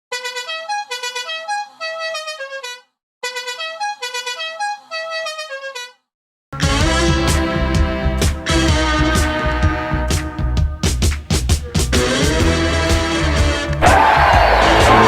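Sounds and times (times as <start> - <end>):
goal horn playing stepped notes: 0.1 - 6.0, 6.6 - 10.7, 11.6 - 15.0
loud goal song music: 6.6 - 15.0.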